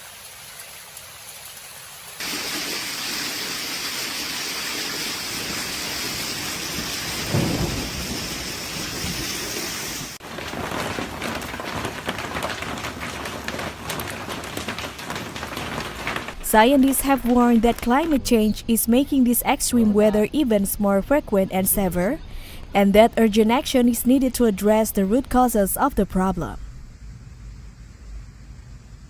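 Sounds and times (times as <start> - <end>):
heavy rain hissing: 2.2 - 16.4
hail pelting hard surfaces: 2.2 - 18.4
thunder rumble: 5.2 - 12.9.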